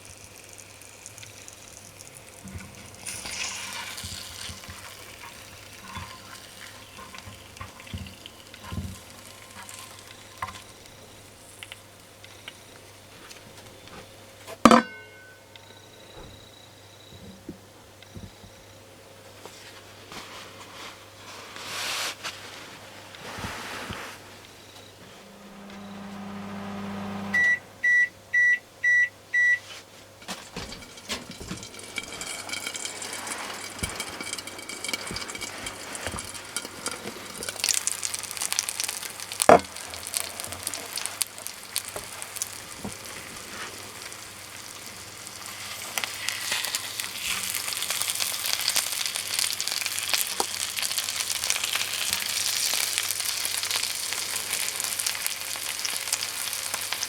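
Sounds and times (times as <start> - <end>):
fish sizzling and crackling: 0.0 - 14.4, 30.2 - 57.0
microwave beeps: 14.7 - 18.8, 24.5 - 29.7
microwave oven humming: 24.3 - 57.0.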